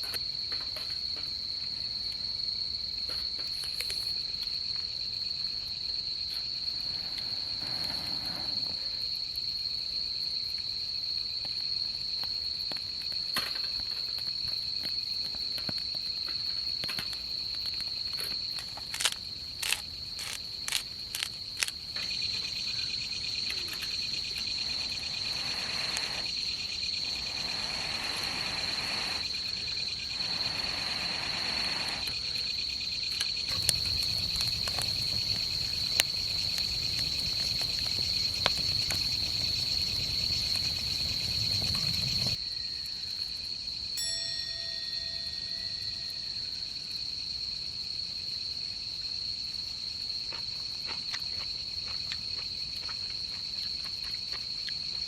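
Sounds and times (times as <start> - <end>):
lower insect trill: 0.0 - 55.0
insects trilling high: 3.0 - 10.4, 12.2 - 48.4
soft hiss: 22.6 - 42.4.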